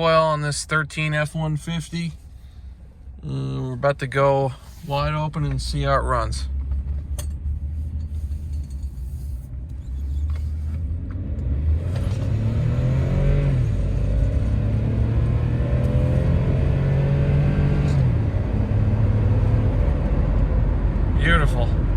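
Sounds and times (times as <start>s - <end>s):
truck engine accelerating: 9.5s - 21.9s.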